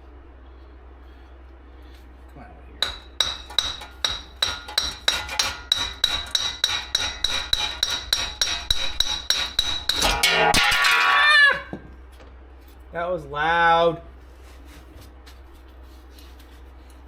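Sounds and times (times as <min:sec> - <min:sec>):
hammering on steel: 0:02.8 - 0:11.1.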